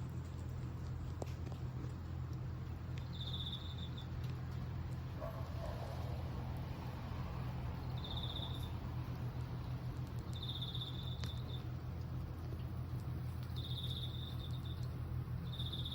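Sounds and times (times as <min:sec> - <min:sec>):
steady low hum: 0:00.0 - 0:15.9
cricket chirping trills: 0:03.0 - 0:04.1, 0:07.7 - 0:08.8, 0:10.2 - 0:11.8, 0:13.4 - 0:15.9.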